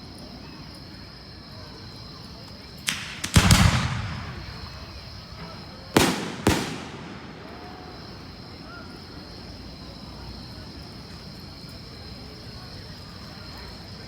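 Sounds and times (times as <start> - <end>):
fireworks bangs with echo: 2.9 - 9.2.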